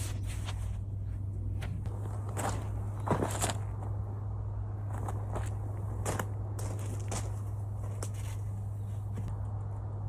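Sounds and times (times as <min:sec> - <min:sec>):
footsteps: 0:00.0 - 0:04.0, 0:04.9 - 0:09.4
steady low hum: 0:00.0 - 0:10.0.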